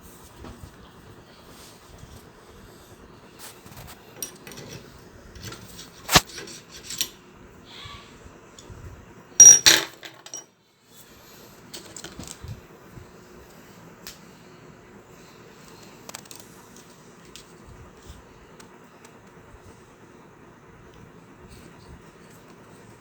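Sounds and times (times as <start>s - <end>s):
metal tools clinking on sewing machine: 4.1s - 7.2s, 9.4s - 10.5s
metallic clatter with ring: 4.1s - 7.2s, 9.4s - 10.5s.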